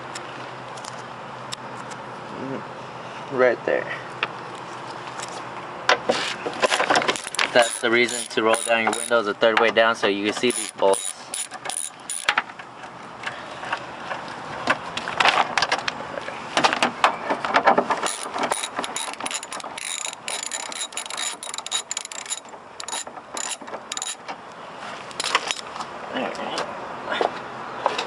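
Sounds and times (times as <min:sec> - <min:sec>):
socket ratchet clicking: 0:06.7 - 0:09.2, 0:10.4 - 0:12.3, 0:18.0 - 0:24.2.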